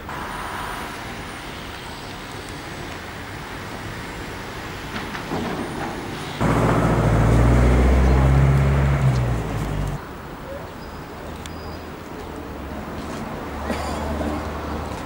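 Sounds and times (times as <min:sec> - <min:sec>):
construction site noise: 0:00.0 - 0:15.0
heavy engine running: 0:04.7 - 0:10.0.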